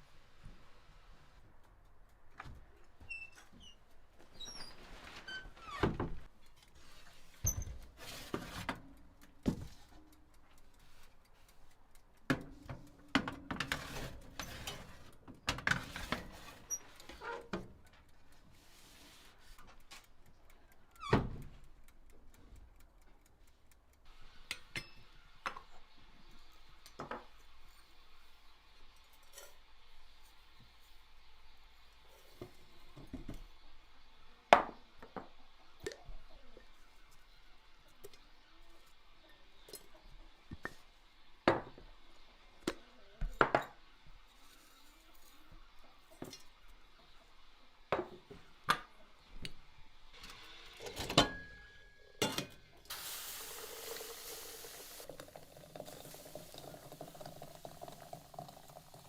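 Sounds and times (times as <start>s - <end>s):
faint steady hiss: 0.0s - 2.9s, 52.8s - 59.0s.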